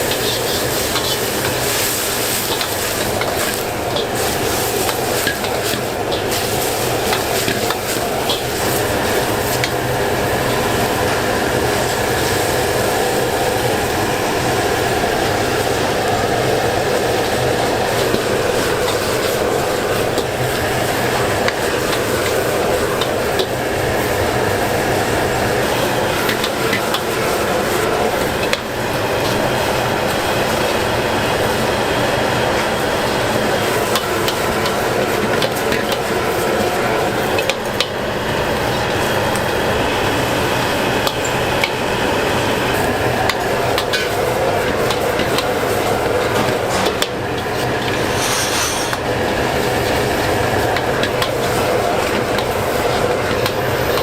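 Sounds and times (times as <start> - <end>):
steady kitchen roar: 0.0 - 54.0
metal utensils scraping cookware: 0.1 - 1.4, 48.0 - 49.0.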